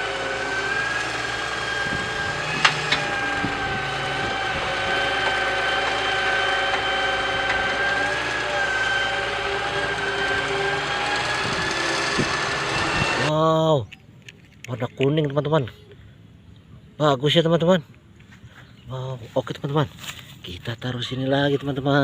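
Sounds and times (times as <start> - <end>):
high whine: 0.0 - 13.3
toy excavator motor humming: 0.0 - 13.3.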